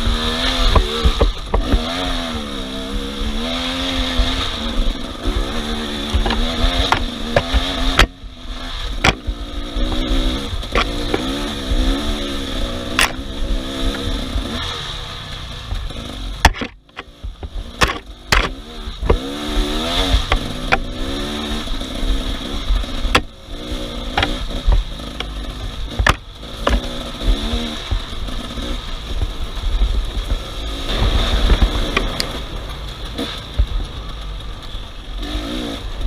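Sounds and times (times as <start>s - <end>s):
off-road vehicle engine revving: 0.0s - 36.0s
sharp knocks: 6.0s - 8.2s, 16.4s - 19.3s, 24.1s - 25.3s, 25.9s - 27.5s.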